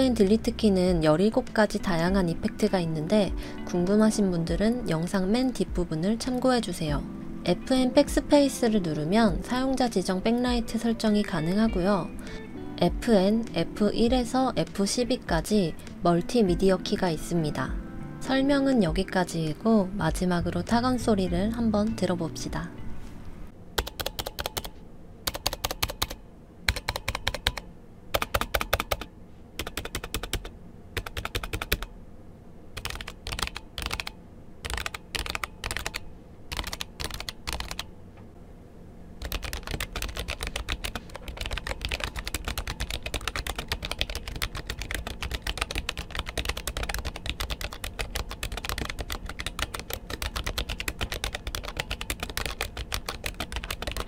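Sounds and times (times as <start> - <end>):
mechanical keyboard typing: 23.8 - 31.9, 32.8 - 37.9, 39.2 - 54.0.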